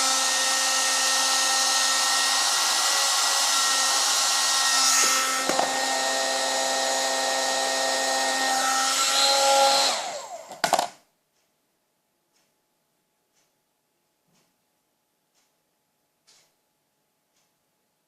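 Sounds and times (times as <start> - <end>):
hair dryer blowing: 0.0 - 10.9.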